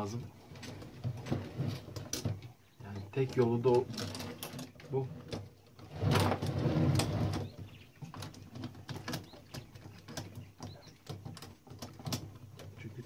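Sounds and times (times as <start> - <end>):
rough metal scraping: 0.0 - 2.4, 3.0 - 9.1.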